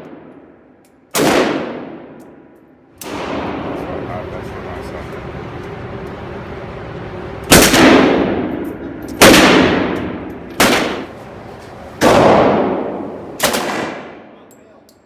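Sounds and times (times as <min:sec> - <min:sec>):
gunshots: 0:01.1 - 0:02.2, 0:03.0 - 0:04.1, 0:07.5 - 0:08.6, 0:09.2 - 0:14.3.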